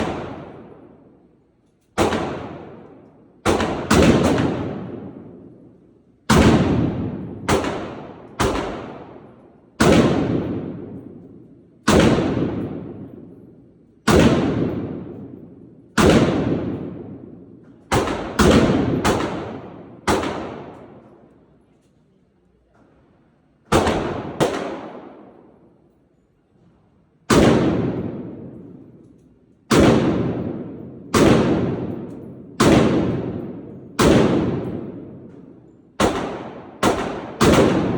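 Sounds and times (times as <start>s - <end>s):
gunshots with echo: 0.0s - 1.2s, 2.0s - 21.2s, 23.7s - 25.7s, 27.3s - 29.0s, 29.7s - 37.9s.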